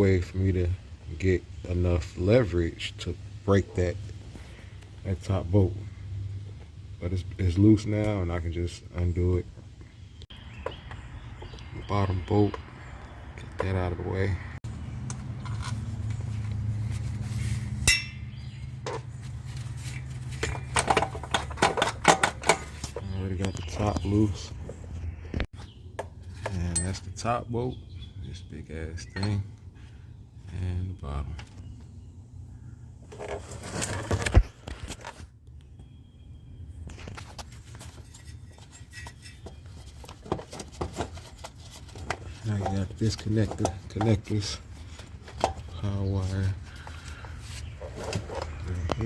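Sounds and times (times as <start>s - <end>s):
metal parts clinking and scraping: 15.1s - 16.0s, 37.5s - 44.6s
metal clink: 17.8s - 19.2s.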